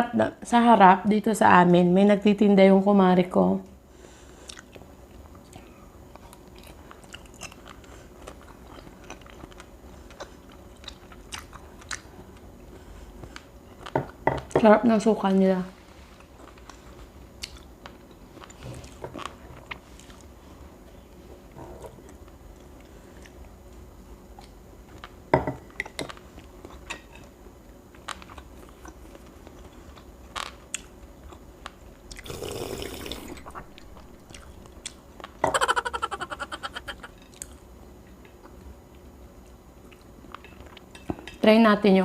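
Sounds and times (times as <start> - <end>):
person chewing food: 4.4 - 13.9, 16.2 - 20.3, 22.0 - 23.6, 32.1 - 39.1.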